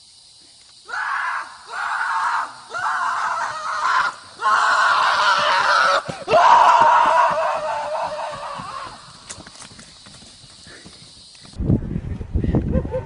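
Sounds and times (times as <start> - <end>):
loud drawn-out screams: 0.8 - 9.3.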